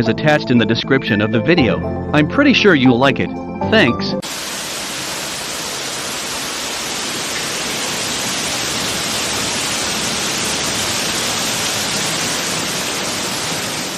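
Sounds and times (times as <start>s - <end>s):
floodwater rushing: 4.2s - 13.9s.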